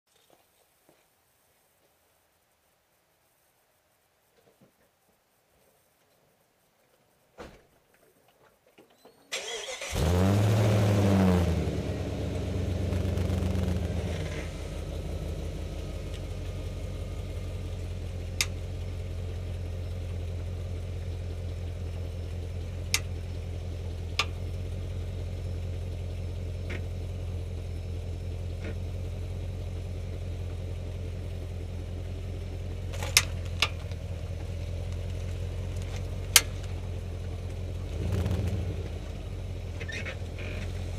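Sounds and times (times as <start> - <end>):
car engine starting and idling: 9.3 - 40.9.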